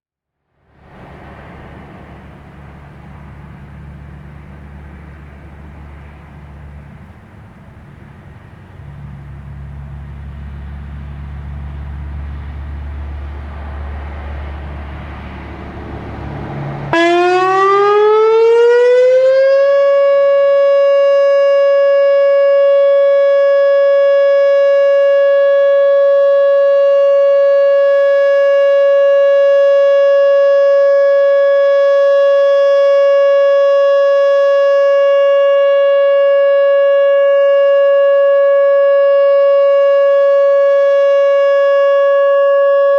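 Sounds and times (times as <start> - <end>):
low rumble: 0.6 - 17.6
electronic warning siren: 14.6 - 42.9.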